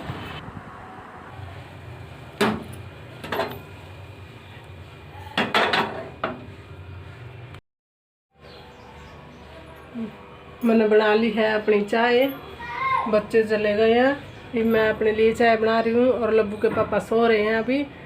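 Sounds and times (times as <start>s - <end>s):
dishes and utensils clinking: 5.2s - 6.4s.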